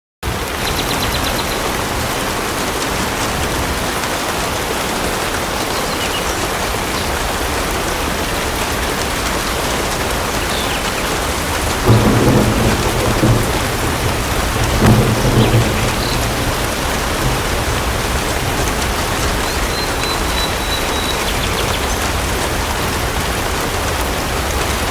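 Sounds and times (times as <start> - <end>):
steady rain falling: 0.2 - 24.9
low rolls of thunder: 9.1 - 24.9.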